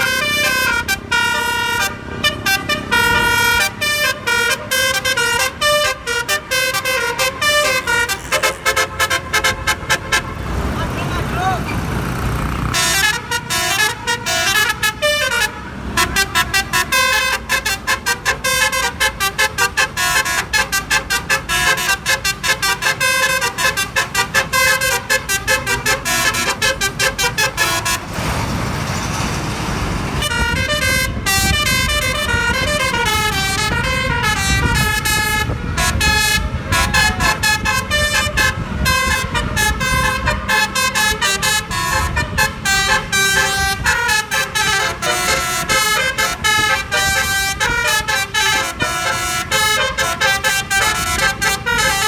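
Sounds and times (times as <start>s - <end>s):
melodic vehicle horn: 0.0s - 28.3s, 30.2s - 52.0s
road and engine noise: 0.0s - 52.0s.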